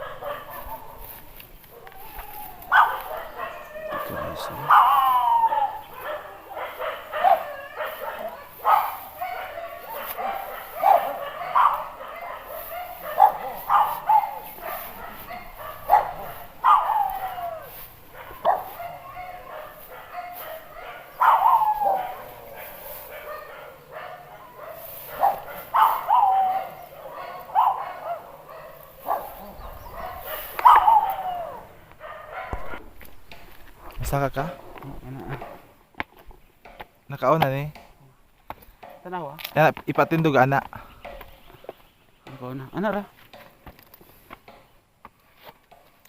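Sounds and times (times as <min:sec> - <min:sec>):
animal calling: 0:01.8 - 0:24.5, 0:29.1 - 0:32.6.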